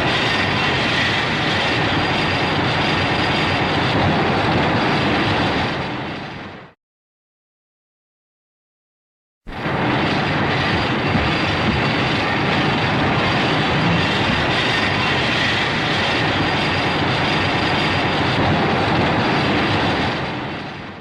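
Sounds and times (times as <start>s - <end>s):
rushing blast sound effect: 9.5s - 16.4s.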